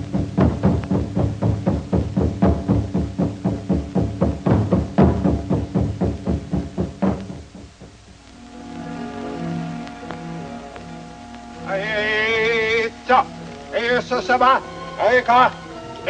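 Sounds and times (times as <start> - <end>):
fast drum beat: 0.0 - 8.0
low held notes: 0.0 - 16.0.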